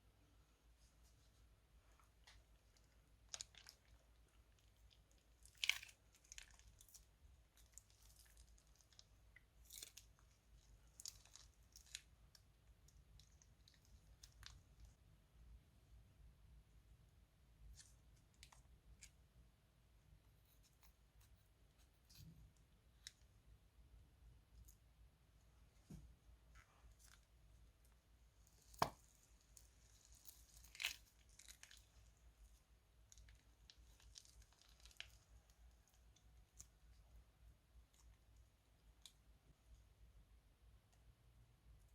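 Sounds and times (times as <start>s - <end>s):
crunchy slime crackling: 3.2s - 14.6s, 28.4s - 32.1s, 33.0s - 36.9s.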